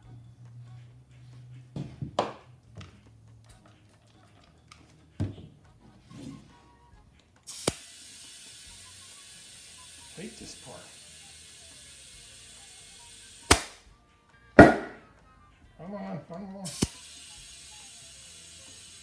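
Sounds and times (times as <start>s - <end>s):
compressed air hissing: 7.4s - 13.9s, 14.6s - 15.0s, 15.8s - 19.0s
tire bead cracking onto wheel: 13.4s - 13.9s.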